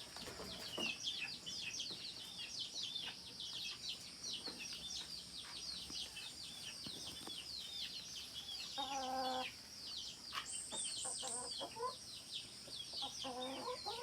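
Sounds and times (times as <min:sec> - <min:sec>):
small birds peeping: 0:00.0 - 0:14.0
hen clucking: 0:08.6 - 0:09.6, 0:10.3 - 0:12.0, 0:12.9 - 0:14.0.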